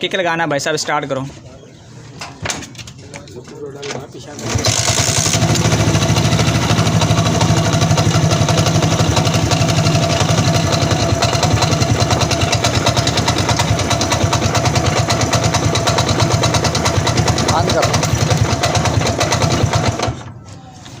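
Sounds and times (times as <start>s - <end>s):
motorcycle engine idling with knock: 5.4s - 20.3s.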